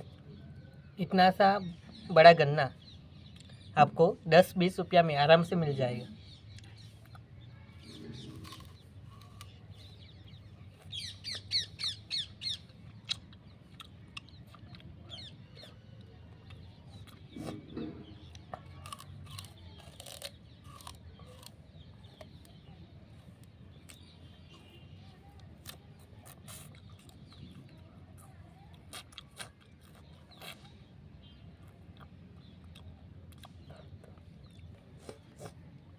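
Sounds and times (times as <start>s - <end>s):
bird chirping: 0.0s - 25.2s
sugarcane being chewed: 6.4s - 35.9s.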